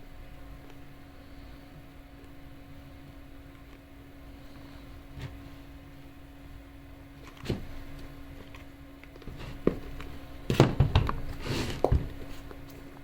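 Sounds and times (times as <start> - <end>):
steady low hum: 0.0 - 13.0
dull handling knocks: 9.5 - 12.3.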